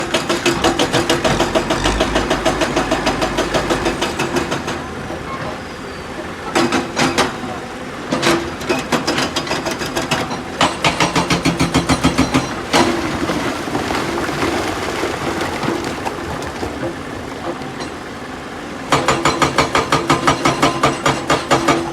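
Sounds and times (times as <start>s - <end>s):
hydraulic rock breaker hammering stone: 0.0s - 5.6s, 6.5s - 13.3s, 18.9s - 21.9s
excavator diesel engine running: 0.0s - 13.2s.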